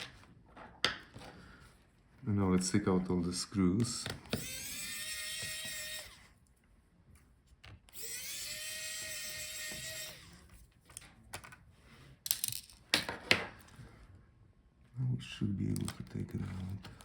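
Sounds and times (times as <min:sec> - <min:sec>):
electric screwdriver whine: 0:04.3 - 0:06.3, 0:07.9 - 0:10.5
small parts clattering: 0:12.2 - 0:13.4.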